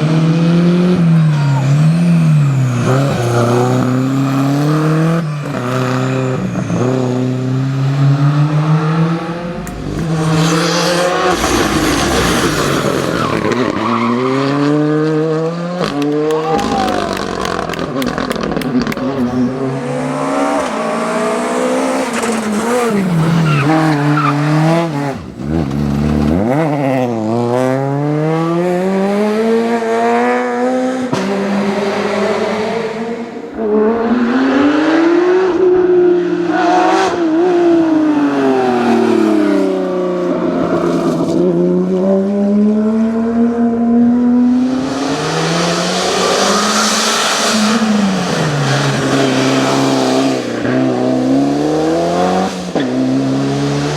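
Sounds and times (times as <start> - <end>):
rally car engines revving: 0.0 - 53.9
tyres squealing: 8.9 - 14.4.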